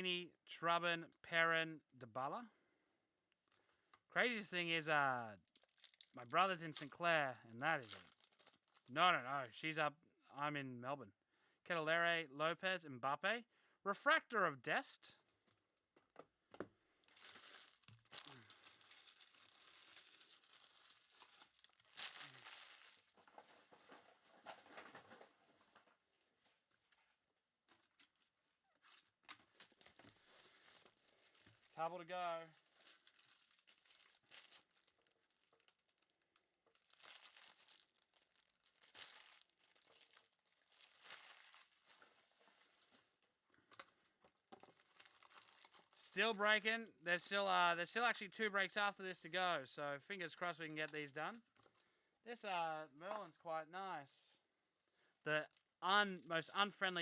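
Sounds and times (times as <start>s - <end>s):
wrapper ripping: 5.4s - 7.0s, 7.6s - 9.0s, 17.0s - 24.3s, 27.9s - 43.3s, 44.6s - 46.0s
wrapper crinkling and tearing: 5.4s - 9.0s, 17.0s - 25.0s, 27.7s - 46.0s.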